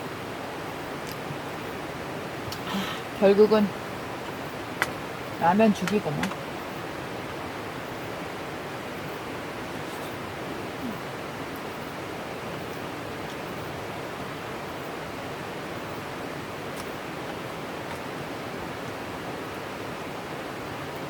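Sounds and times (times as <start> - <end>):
river rushing: 0.0 - 21.0.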